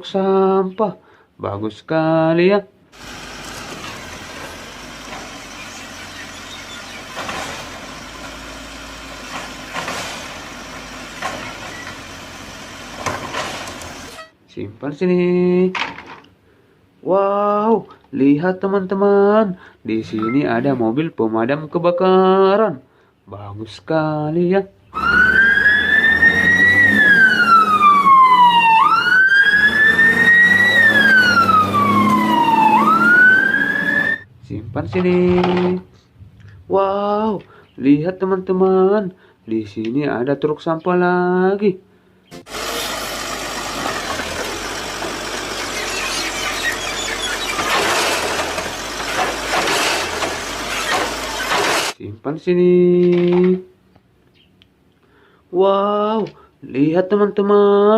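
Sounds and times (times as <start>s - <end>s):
truck engine idling: 3.0s - 14.2s, 25.0s - 35.1s, 42.4s - 52.0s
fire engine siren wailing: 24.9s - 34.3s
low rumble: 34.2s - 37.5s.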